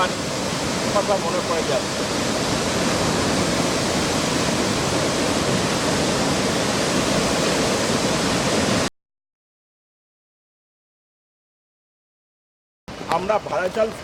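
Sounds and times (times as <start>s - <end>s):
water pouring down waterfall: 0.0s - 8.9s, 12.9s - 14.0s.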